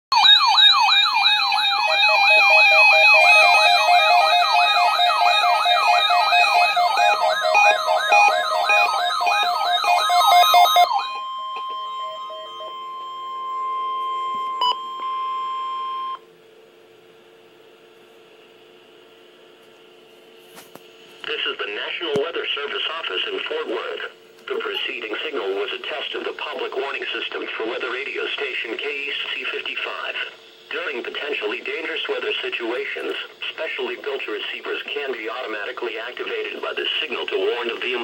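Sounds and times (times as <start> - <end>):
warbling alert alarm: 0.1 - 16.2, 24.5 - 25.5
steady warning alarm tone: 0.1 - 16.3, 22.9 - 27.2, 28.0 - 38.0
faint hum: 0.8 - 38.0.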